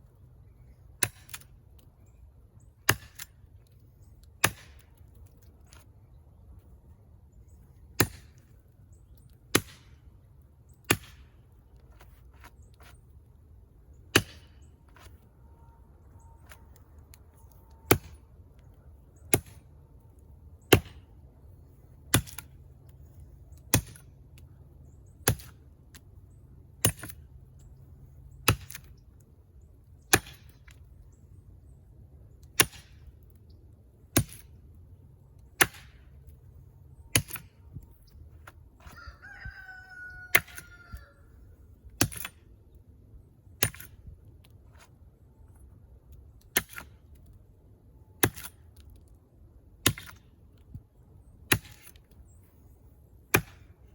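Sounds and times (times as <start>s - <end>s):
brush knife chopping tree trunk: 1.0s - 1.5s, 2.8s - 3.4s, 4.3s - 5.9s, 8.0s - 8.5s, 9.2s - 10.0s, 10.8s - 13.0s, 14.1s - 15.2s, 17.9s - 18.2s, 19.2s - 19.7s, 20.6s - 21.1s, 22.1s - 22.6s, 23.6s - 24.1s, 25.2s - 26.0s, 26.8s - 27.3s, 28.4s - 29.0s, 30.0s - 30.8s, 32.4s - 33.1s, 34.1s - 34.5s, 35.6s - 36.1s, 37.1s - 37.5s, 42.0s - 42.4s, 43.6s - 44.0s, 46.4s - 47.0s, 48.2s - 48.6s, 49.8s - 50.2s, 51.4s - 52.0s, 53.3s - 53.7s.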